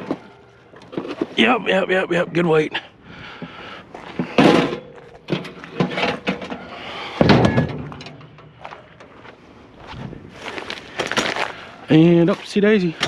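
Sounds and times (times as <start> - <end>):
heavy metal clanks: 3.4 - 9.3.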